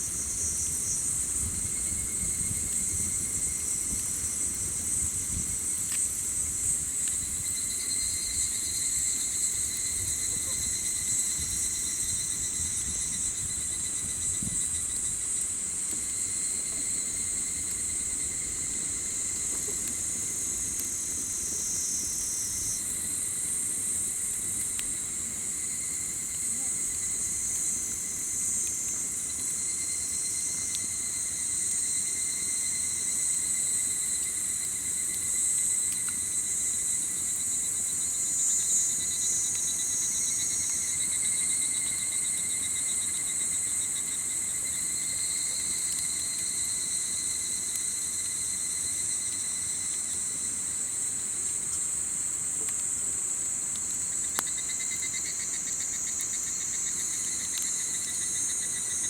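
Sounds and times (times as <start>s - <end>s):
campfire crackles: 0.0s - 59.0s
insects singing: 54.0s - 59.0s.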